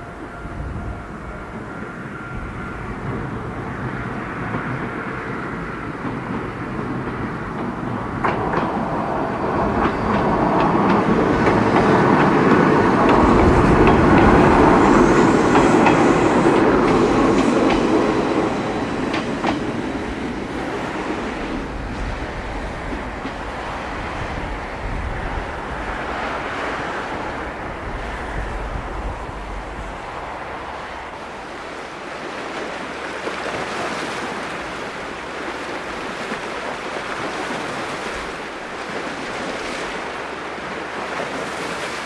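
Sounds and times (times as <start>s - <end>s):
electric train passing: 0.0s - 42.0s
wind buffeting microphone: 0.0s - 42.0s
wheels clicking over rail joints: 4.4s - 20.4s.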